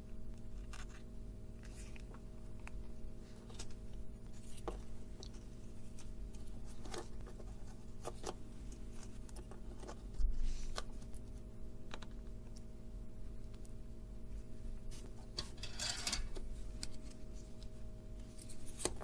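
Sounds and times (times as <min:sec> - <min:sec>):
electrical hum: 0:00.0 - 0:19.0
tools clicking and scraping: 0:15.4 - 0:16.4.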